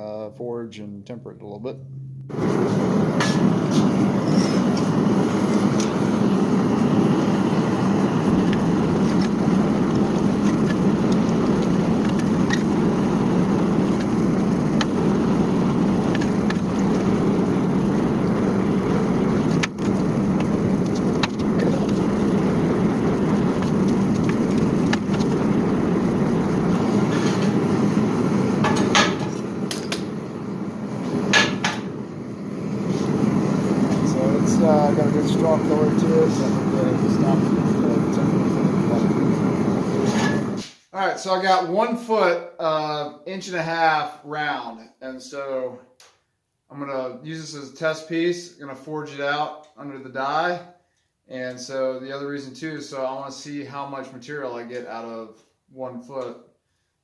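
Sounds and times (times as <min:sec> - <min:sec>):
gas forge burner rushing: 0:02.3 - 0:40.8.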